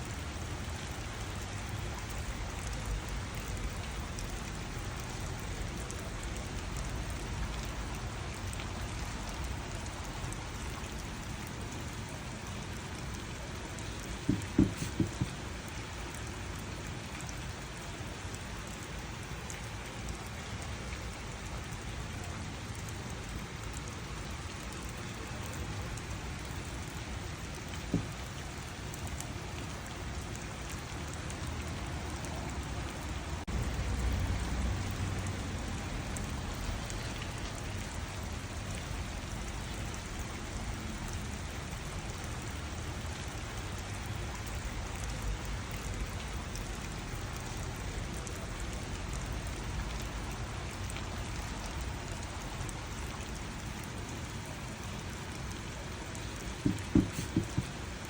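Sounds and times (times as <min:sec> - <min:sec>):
raindrops ticking: 0:00.0 - 0:58.0
steady rain falling: 0:00.0 - 0:58.0
low thumps: 0:14.2 - 0:15.4.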